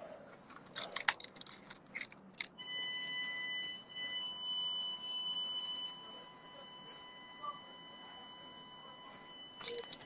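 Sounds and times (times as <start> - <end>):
high-pitched alarm tone: 2.6 - 10.0.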